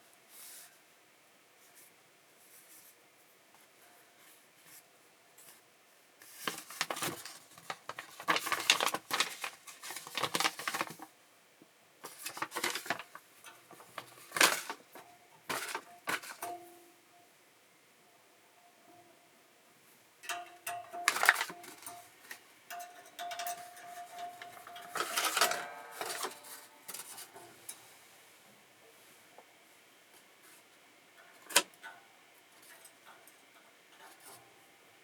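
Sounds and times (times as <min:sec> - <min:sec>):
paper rustling and clicking: 0:06.2 - 0:11.1, 0:12.0 - 0:16.6, 0:20.3 - 0:27.4.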